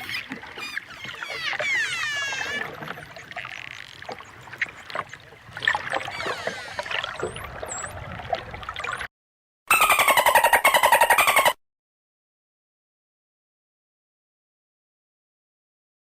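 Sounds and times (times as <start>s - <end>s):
dolphin whistles: 0.0s - 3.2s, 6.0s - 8.0s, 9.7s - 11.6s
dolphin buzzing pulsed calls: 0.0s - 4.0s, 6.0s - 7.9s, 9.7s - 11.6s.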